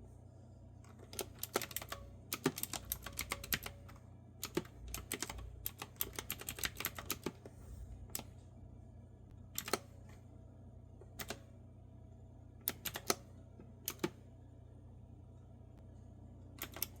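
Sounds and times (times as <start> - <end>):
keyboard keystrokes: 1.0 - 3.8, 4.4 - 7.4, 9.6 - 9.9, 12.7 - 13.2, 13.9 - 14.2, 16.6 - 17.0.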